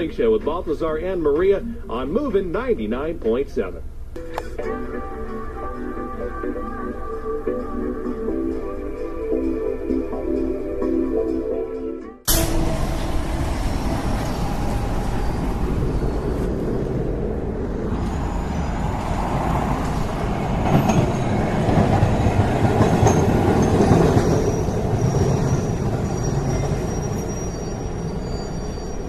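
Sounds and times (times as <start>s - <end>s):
high wheel squeals: 12.3s - 29.0s
rail car rumbling on track: 12.3s - 29.0s.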